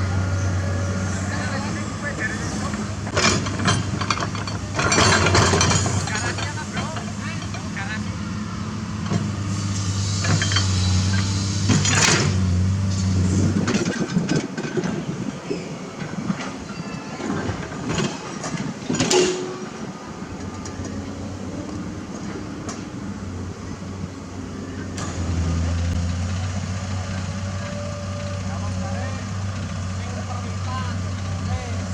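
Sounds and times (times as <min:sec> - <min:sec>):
diesel machinery running: 0:00.0 - 0:31.9
metallic clanks and scrapes: 0:02.4 - 0:07.7, 0:09.0 - 0:15.7, 0:16.3 - 0:21.0.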